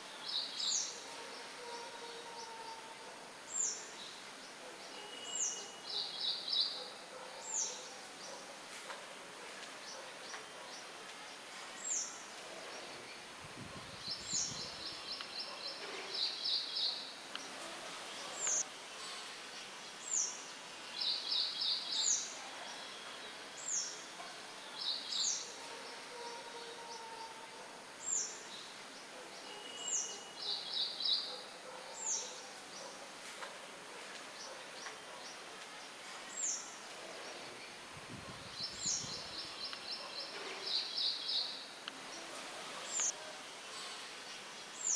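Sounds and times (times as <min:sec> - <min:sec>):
light wind: 0:06.2 - 0:26.1, 0:30.7 - 0:44.9.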